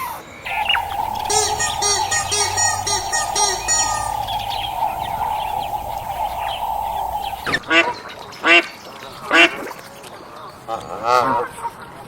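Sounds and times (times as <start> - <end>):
steady background hiss: 0.5 - 7.6
faint bird chirps: 0.5 - 7.7.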